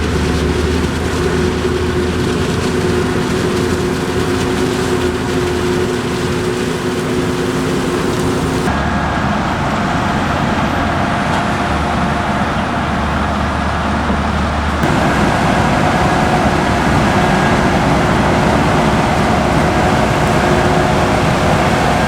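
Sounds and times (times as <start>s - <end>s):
heavy farm machinery engines: 0.0s - 22.0s.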